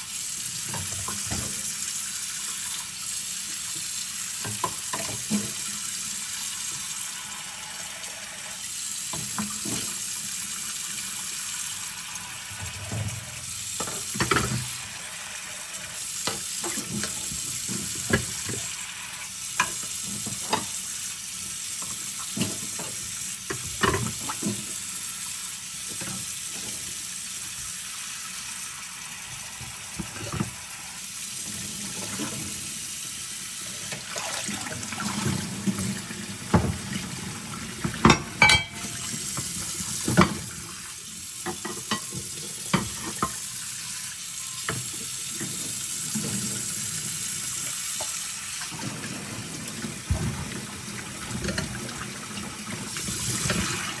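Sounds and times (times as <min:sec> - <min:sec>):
tap running into sink: 0:00.7 - 0:01.6, 0:12.6 - 0:14.7, 0:16.2 - 0:18.7, 0:35.0 - 0:37.2, 0:37.8 - 0:40.6
plates clinking: 0:38.0 - 0:39.0.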